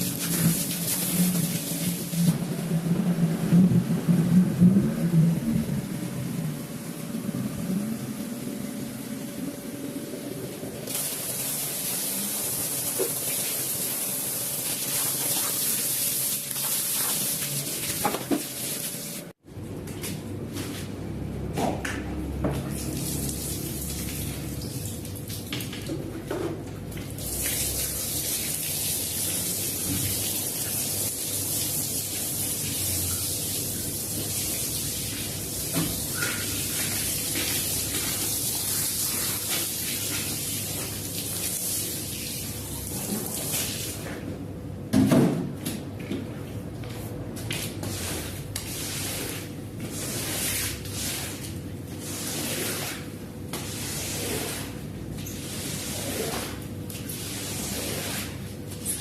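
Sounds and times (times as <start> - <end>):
water spraying onto rug: 0.0 - 2.6, 10.9 - 19.3, 27.2 - 44.1, 47.8 - 54.8, 55.4 - 58.5.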